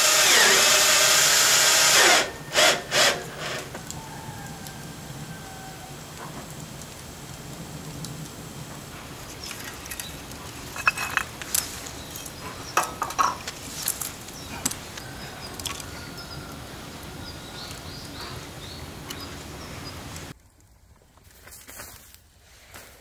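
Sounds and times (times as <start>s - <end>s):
firewood crackling in a stove: 0.0s - 23.0s.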